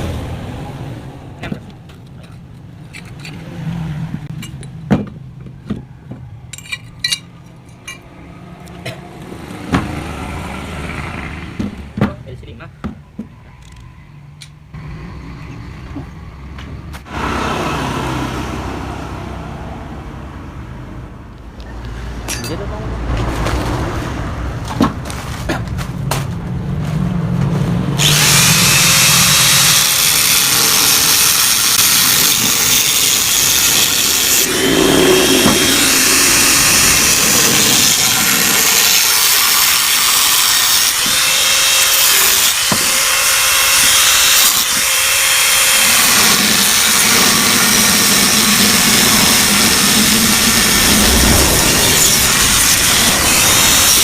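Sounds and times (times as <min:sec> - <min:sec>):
power tool cutting steel: 0:28.0 - 0:54.0.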